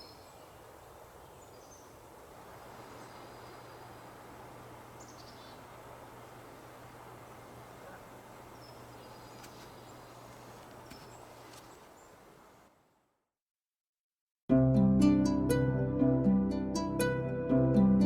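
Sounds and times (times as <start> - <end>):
steady outdoor hiss: 0.0 - 13.3.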